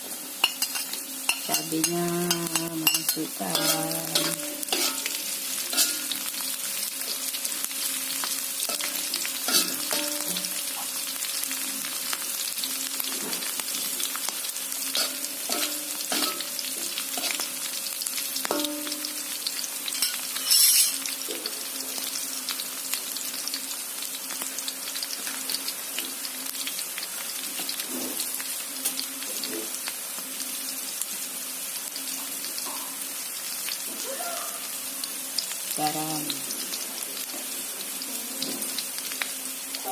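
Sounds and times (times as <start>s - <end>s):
shallots sizzling in hot oil: 0.0s - 39.9s
spatula scraping a pan: 2.4s - 6.2s, 20.0s - 21.1s.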